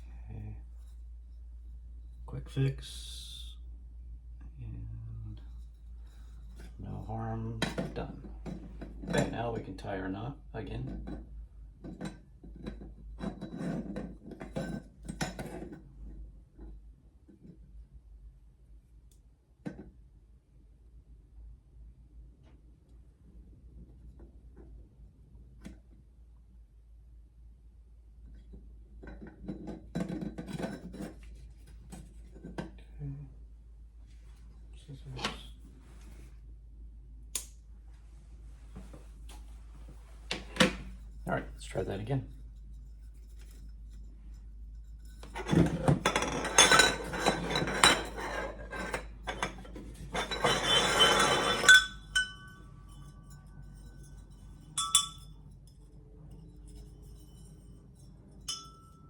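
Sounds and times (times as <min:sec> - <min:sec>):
wind chime parts handled: 0:49.3 - 0:55.3.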